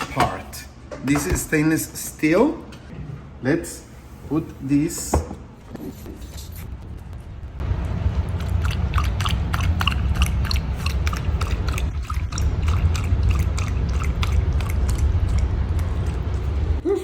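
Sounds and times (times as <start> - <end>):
low pump hum: 5.3 - 17.0
water ticks and splashes: 7.8 - 16.6.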